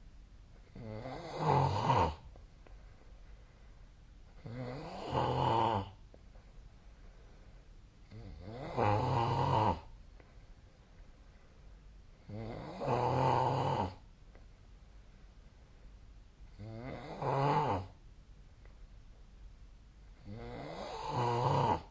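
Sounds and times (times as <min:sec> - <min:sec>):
person snoring: 0:00.8 - 0:02.2, 0:04.4 - 0:06.0, 0:08.1 - 0:09.9, 0:12.3 - 0:14.0, 0:16.6 - 0:18.0, 0:20.2 - 0:21.9.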